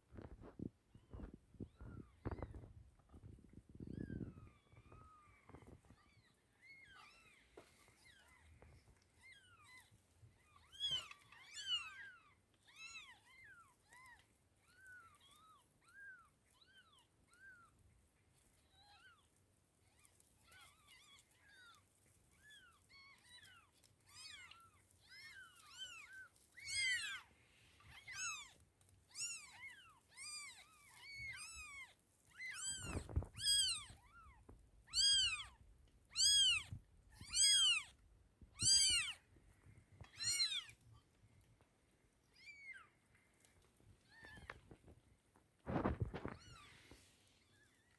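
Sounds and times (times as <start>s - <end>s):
kittens mewing: 24.2s - 27.3s, 27.9s - 39.3s, 40.0s - 40.8s.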